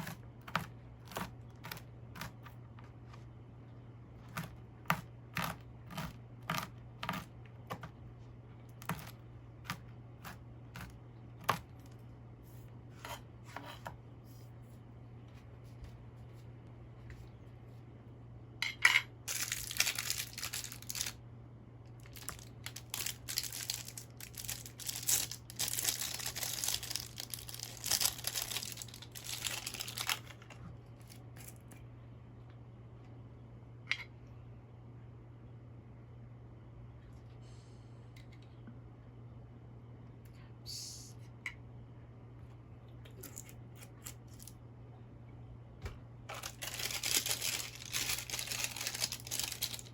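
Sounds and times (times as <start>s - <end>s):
packaging crinkling and tearing: 19.3s - 21.2s, 22.0s - 31.7s, 46.3s - 49.9s.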